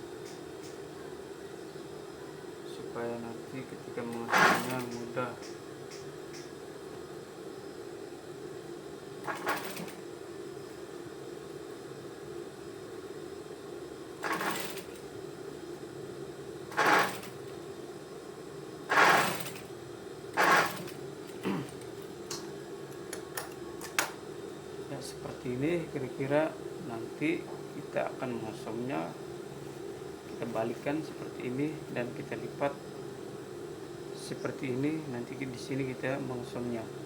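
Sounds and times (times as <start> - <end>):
sewing machine humming: 4.1 - 5.0, 9.2 - 10.0, 14.2 - 15.1, 16.7 - 17.6, 18.9 - 19.7, 20.3 - 21.9.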